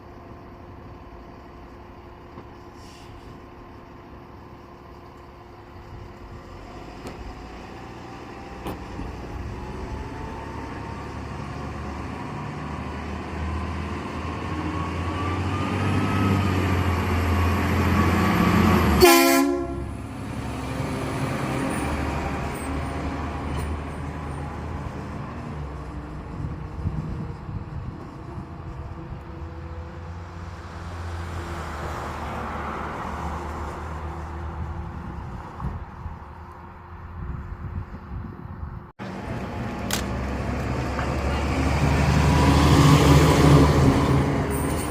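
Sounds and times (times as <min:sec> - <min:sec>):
diesel engine approaching: 0:00.0 - 0:44.9
train horn blast: 0:19.0 - 0:20.0.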